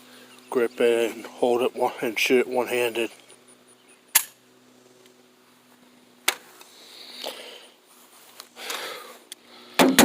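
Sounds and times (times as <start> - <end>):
soft rustling hiss: 4.6 - 9.7.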